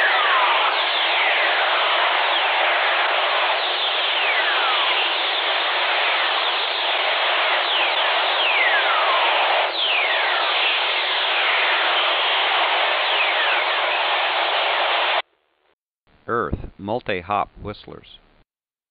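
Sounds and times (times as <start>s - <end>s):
falling whistling tones: 0.0s - 15.1s.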